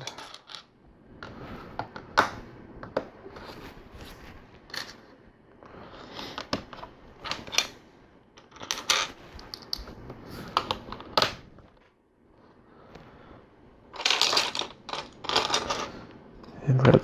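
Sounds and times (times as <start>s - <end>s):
plastic pieces clicking and clattering: 0.0s - 0.7s, 8.4s - 9.9s, 14.0s - 15.9s.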